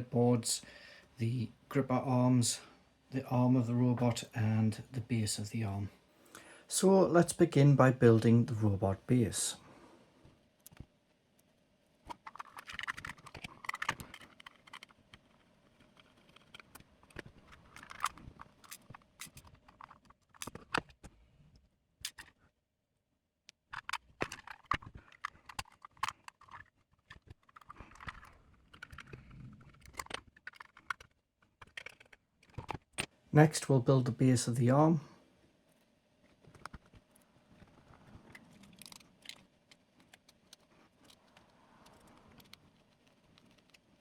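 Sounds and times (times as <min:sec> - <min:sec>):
plastic parts clicking and tapping: 0:10.6 - 0:22.4, 0:23.5 - 0:33.1, 0:35.7 - 0:44.0.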